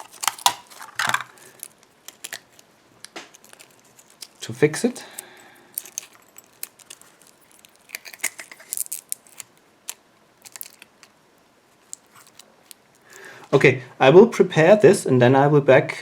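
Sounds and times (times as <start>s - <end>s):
adhesive tape tearing: 0.0s - 2.6s, 6.0s - 11.0s.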